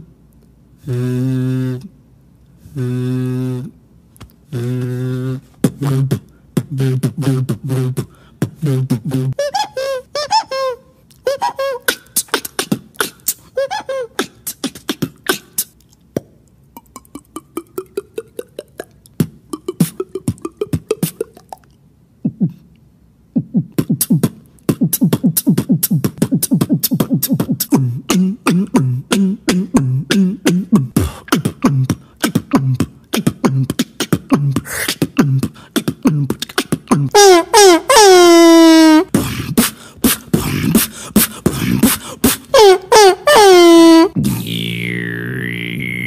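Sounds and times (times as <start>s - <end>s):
beatboxing clicks and pops: 4.1s - 9.4s, 11.8s - 13.5s, 14.2s - 22.8s, 23.4s - 37.2s, 39.1s - 42.6s, 44.2s - 46.0s
rising pitched vocal tone: 43.9s - 46.0s
low pitched pulses: 44.2s - 46.0s.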